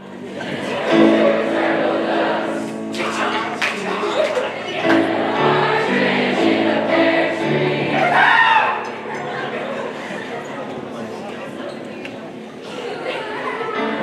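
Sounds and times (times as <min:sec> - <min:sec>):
choir singing sustained chords: 0:00.0 - 0:10.3.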